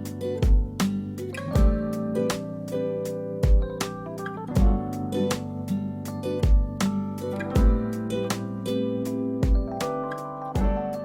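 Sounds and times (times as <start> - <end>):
acoustic guitar music: 0.0 - 11.0
low kick drum: 0.4 - 1.0, 1.6 - 2.2, 3.4 - 4.0, 4.6 - 5.1, 6.4 - 8.2, 9.4 - 9.8, 10.6 - 11.0.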